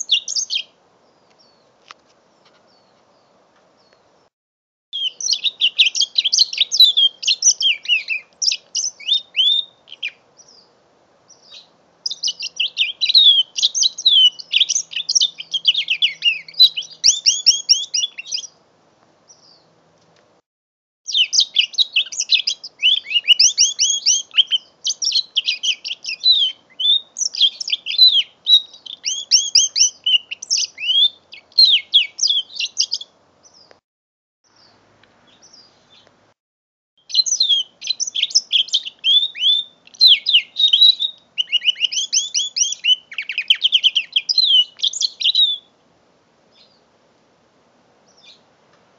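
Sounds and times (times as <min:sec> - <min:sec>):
canary trilled twittering: 0:05.0 - 0:10.2, 0:11.4 - 0:18.5, 0:21.1 - 0:33.1, 0:37.0 - 0:45.7.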